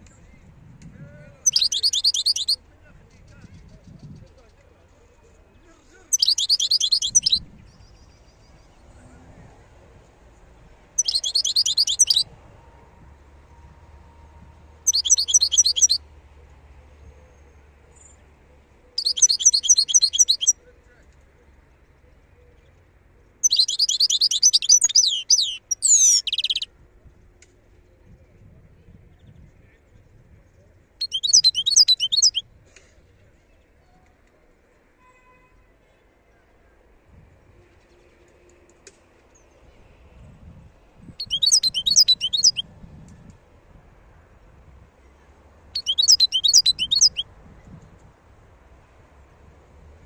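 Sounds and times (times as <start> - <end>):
goldfinch singing: 1.4 - 2.6, 6.1 - 7.4, 11.0 - 12.2, 14.9 - 16.0, 19.0 - 20.5, 23.4 - 26.7, 31.0 - 32.4, 41.2 - 42.6, 45.8 - 47.2.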